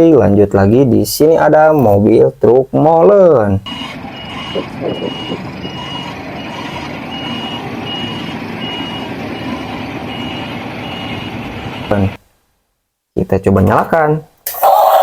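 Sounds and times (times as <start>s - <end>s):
toy truck reversing beeps: 3.7s - 11.9s
whirring motor noise: 3.7s - 11.9s.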